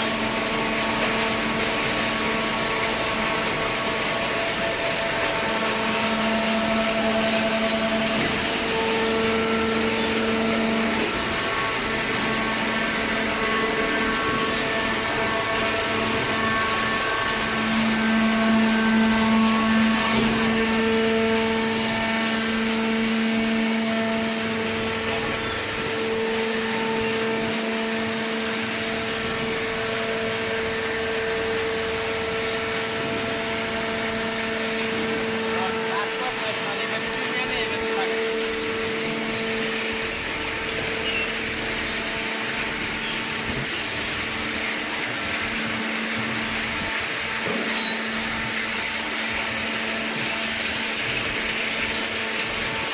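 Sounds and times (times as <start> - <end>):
machine engine running: 0.0 - 52.9
motor humming and whining: 0.0 - 52.9.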